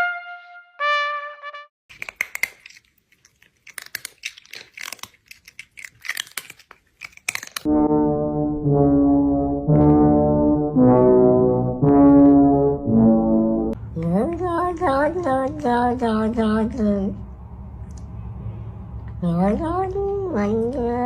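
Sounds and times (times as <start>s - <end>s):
crackly clicks and scratches: 1.9s - 7.7s
low brass instrument held notes: 7.7s - 13.8s.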